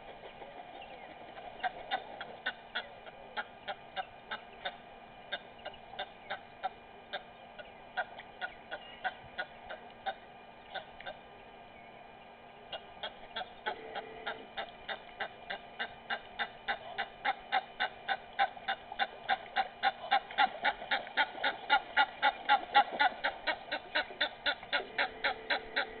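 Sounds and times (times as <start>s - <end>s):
bird calling harsh notes: 12.7s - 26.0s.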